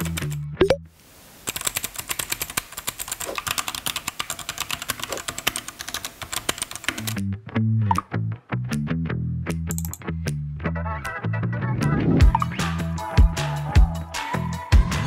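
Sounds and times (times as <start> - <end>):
mechanical keyboard typing: 0.0 - 0.4, 1.4 - 7.2
music: 0.0 - 0.8, 7.1 - 15.0.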